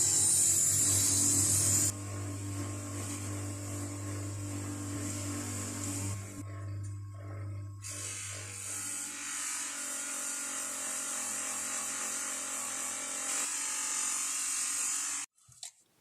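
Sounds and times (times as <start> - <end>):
power tool polishing metal: 0.0 - 15.3.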